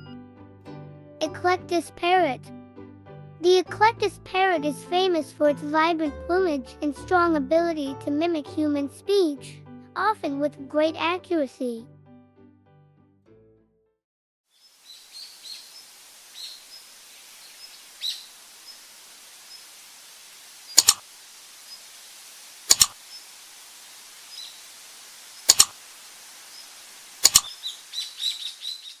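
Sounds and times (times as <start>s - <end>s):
small birds chirping: 14.6s - 29.0s
steady hiss: 14.6s - 29.0s
loud sharp double click: 20.8s - 21.0s, 22.7s - 23.0s, 25.4s - 25.8s, 27.2s - 27.6s.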